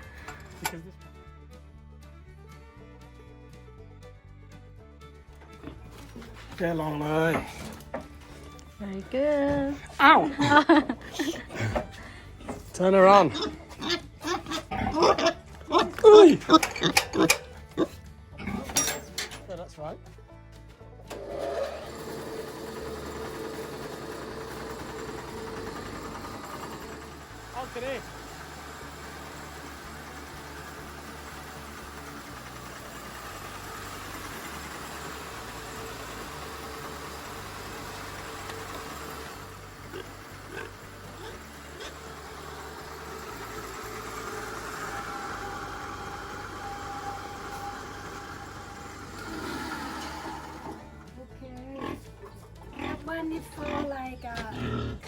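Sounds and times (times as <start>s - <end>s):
rice milling machine whirring: 21.1s - 51.2s.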